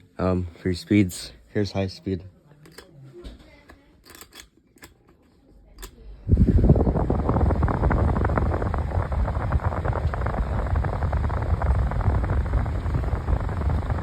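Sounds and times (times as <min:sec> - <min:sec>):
electric fan air rush: 0:06.1 - 0:14.0
wind buffeting microphone: 0:06.3 - 0:14.0.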